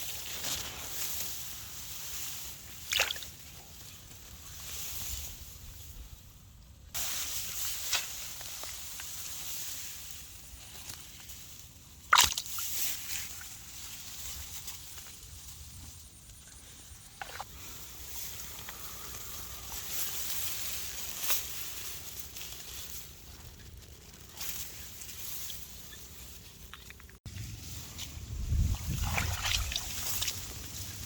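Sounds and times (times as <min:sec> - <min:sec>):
water sloshing and splashing: 0:02.7 - 0:03.5, 0:12.1 - 0:13.6, 0:28.5 - 0:31.0.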